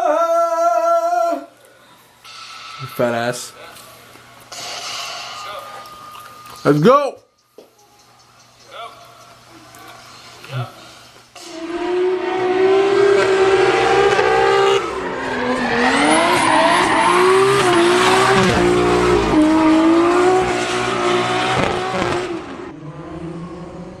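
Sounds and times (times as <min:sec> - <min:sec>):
car engine revving hard: 0:11.4 - 0:24.0.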